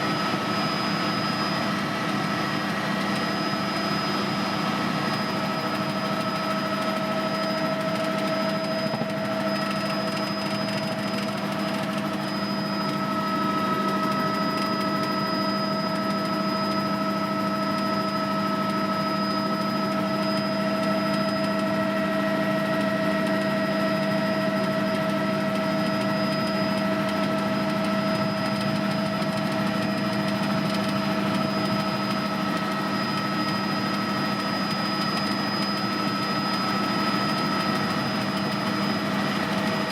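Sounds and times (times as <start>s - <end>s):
helicopter engine and rotor drone: 0.0s - 39.9s
high turbine whine: 0.0s - 39.9s.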